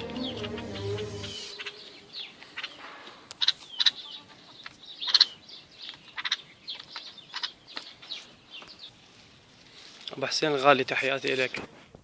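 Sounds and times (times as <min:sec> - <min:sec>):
birds chirping: 0:00.0 - 0:09.0.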